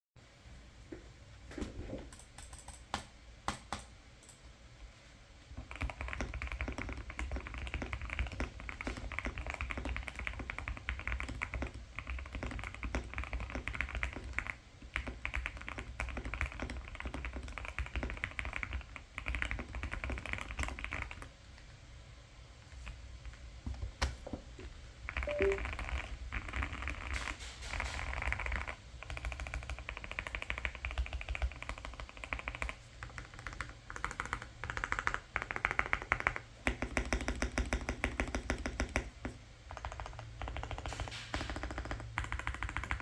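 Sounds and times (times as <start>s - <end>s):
mechanical keyboard typing: 5.6s - 21.3s, 25.1s - 27.1s, 28.0s - 39.1s, 39.7s - 43.0s.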